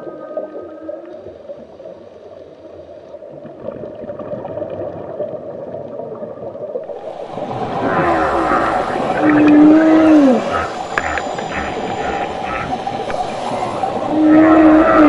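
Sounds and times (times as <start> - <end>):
underwater rushing bubbling water: 3.2 - 15.0
whale call moan: 6.9 - 15.0.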